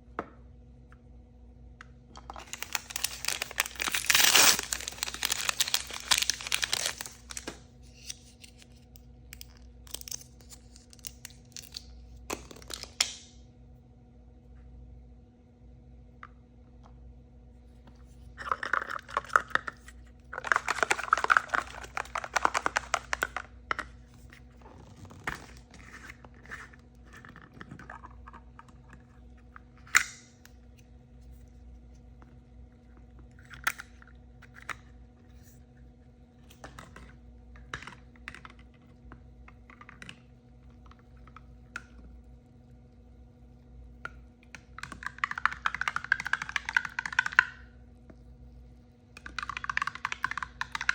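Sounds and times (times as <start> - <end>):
plastic packaging crumpling and tearing: 2.3 - 8.8, 9.4 - 13.0, 20.4 - 23.4.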